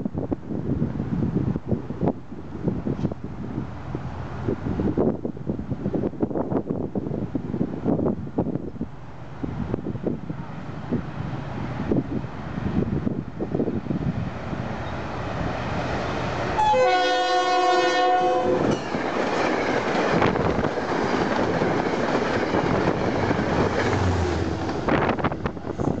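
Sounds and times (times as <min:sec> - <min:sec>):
train wheels rumbling on rails: 0:00.1 - 0:26.0
train air horn: 0:16.6 - 0:18.8.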